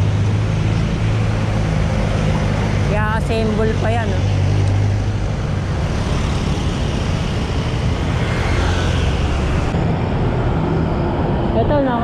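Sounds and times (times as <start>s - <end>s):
vehicle engines rumbling: 0.0s - 12.0s.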